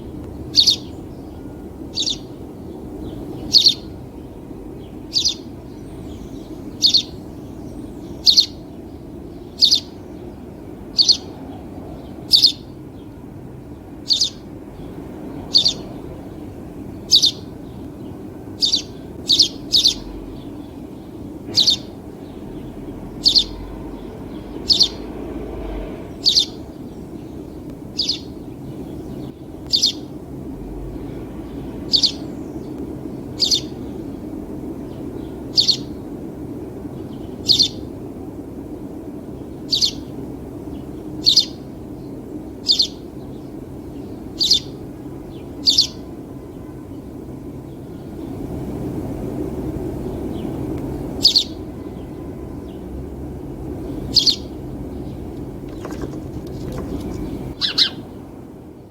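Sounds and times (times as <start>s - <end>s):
sparrow cheeping: 0.0s - 10.2s, 10.8s - 11.4s, 12.2s - 12.8s, 14.0s - 16.1s, 17.0s - 25.1s, 26.2s - 30.1s, 31.8s - 34.3s, 35.4s - 36.0s, 37.3s - 37.9s, 39.6s - 40.1s, 41.2s - 41.7s, 42.6s - 46.1s, 51.2s - 51.7s, 53.8s - 58.2s
steady low background hum: 0.0s - 58.9s.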